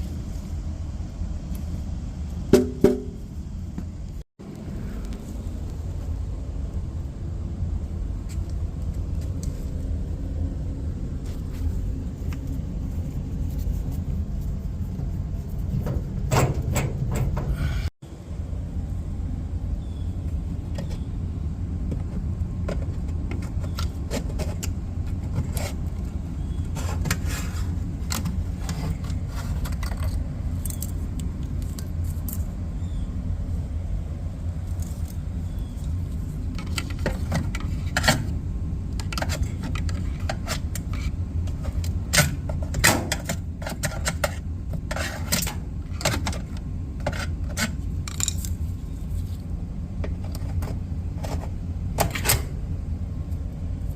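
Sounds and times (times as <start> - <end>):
clothes dryer rumbling: 5.8 - 17.9.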